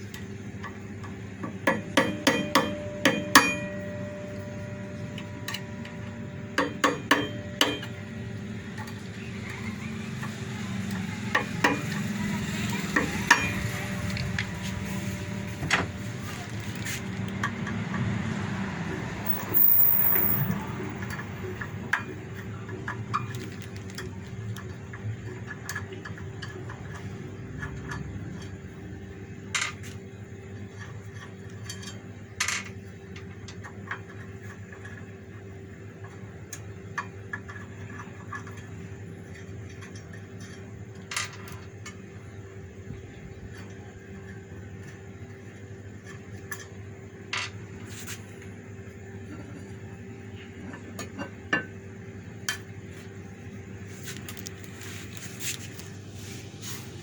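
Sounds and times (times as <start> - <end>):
steady low hum: 0.0 - 9.5, 10.9 - 23.2
metal tools clinking and knocking: 19.3 - 20.7.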